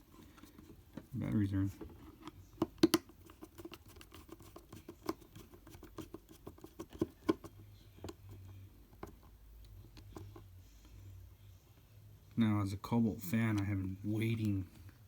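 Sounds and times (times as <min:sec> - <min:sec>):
plastic case clicks and taps: 0:02.6 - 0:03.1.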